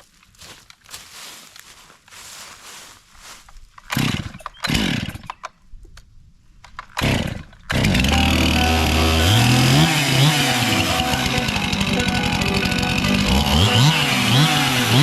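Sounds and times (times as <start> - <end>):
chainsaw pull-start sputtering: 3.8 - 5.6, 6.7 - 15.0
chainsaw engine running: 3.9 - 5.3, 7.0 - 15.0.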